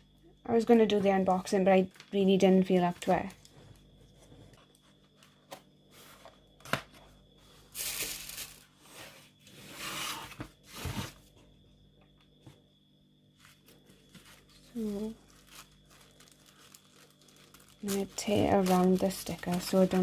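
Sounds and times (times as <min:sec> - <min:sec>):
paper and card rustling: 0:13.4 - 0:20.0.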